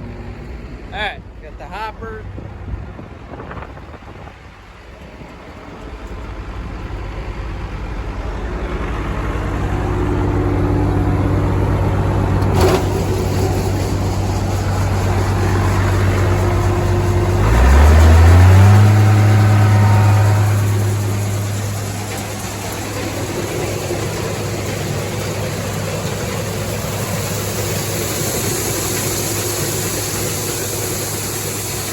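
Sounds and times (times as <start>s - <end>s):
farm machinery engine running: 5.2s - 31.9s.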